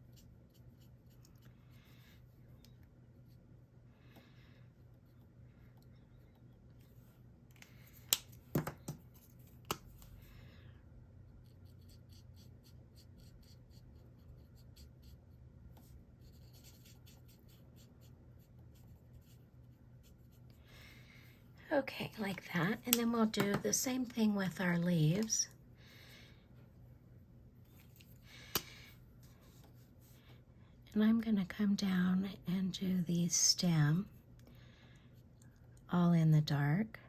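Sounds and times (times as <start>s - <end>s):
marker scratching on paper: 15.8s - 20.4s.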